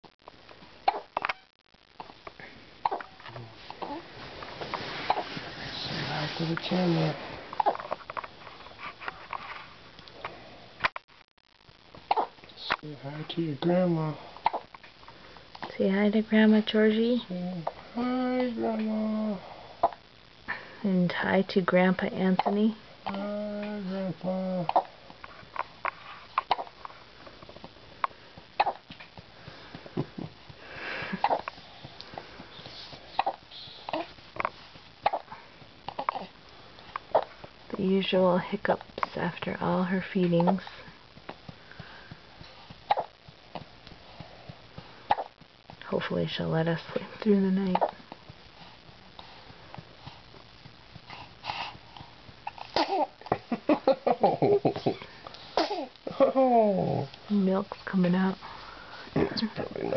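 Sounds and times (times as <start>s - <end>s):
baby hiccuping: 0.8s - 1.4s, 2.8s - 3.2s, 7.6s - 7.9s, 12.1s - 12.4s, 14.4s - 14.7s, 22.4s - 22.6s, 24.6s - 25.0s, 26.4s - 26.7s, 28.6s - 28.9s, 31.2s - 31.5s, 33.1s - 34.1s, 35.0s - 35.2s, 42.9s - 43.2s, 45.1s - 45.3s, 47.7s - 48.0s, 52.5s - 53.2s, 55.6s - 55.9s
infant hiccupping: 0.8s - 1.4s, 2.8s - 4.0s, 7.6s - 8.0s, 11.9s - 12.4s, 14.4s - 14.8s, 17.6s - 20.0s, 22.4s - 26.8s, 28.0s - 29.0s, 29.9s - 34.2s, 35.0s - 36.4s, 37.0s - 37.4s, 42.8s - 43.8s, 45.1s - 45.4s, 47.7s - 48.2s, 51.1s - 57.2s
baby vocal sound: 22.4s - 25.0s, 52.4s - 53.2s, 55.6s - 57.2s.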